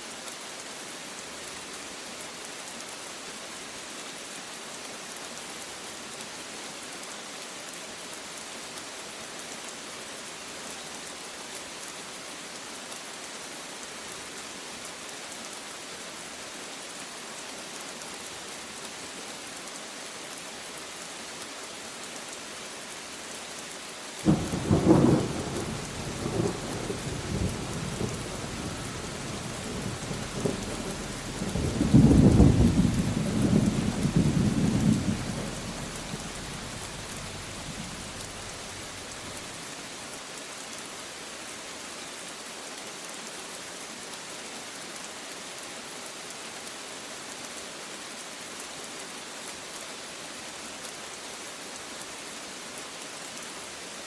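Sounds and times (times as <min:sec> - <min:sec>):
steady rain: 0:00.0 - 0:54.0
rumbling thunder: 0:24.3 - 0:39.4.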